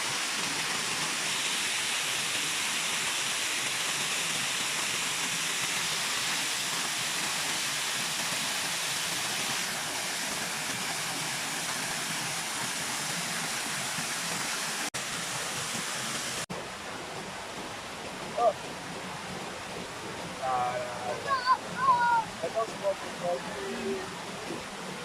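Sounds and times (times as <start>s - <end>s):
waterfall roaring: 0.0s - 25.0s.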